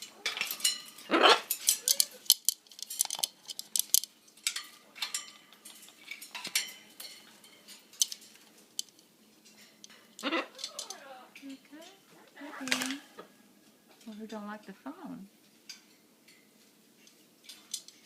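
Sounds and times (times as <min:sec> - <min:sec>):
bird toys clicking and clinking: 0:00.0 - 0:13.2, 0:15.5 - 0:18.0
bird harsh call: 0:10.2 - 0:10.8.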